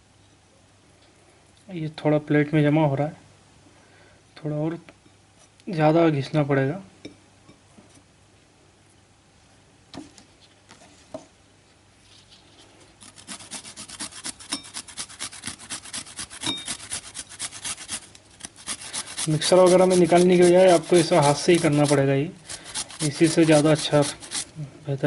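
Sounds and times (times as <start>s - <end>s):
ginger scraping on a grater: 13.0s - 24.6s.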